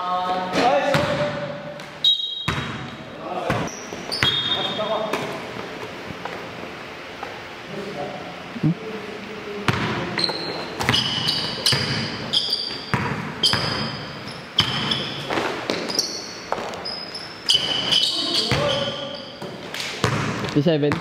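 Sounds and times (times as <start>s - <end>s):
sneaker squeaks: 0.5s - 6.3s, 9.7s - 21.0s
basketball bouncing on court: 0.9s - 5.3s, 9.7s - 21.0s.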